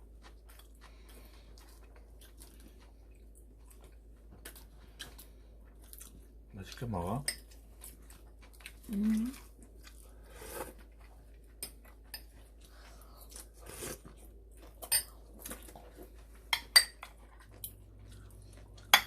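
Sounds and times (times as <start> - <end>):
cutlery clinking on dishes: 16.5 - 17.2.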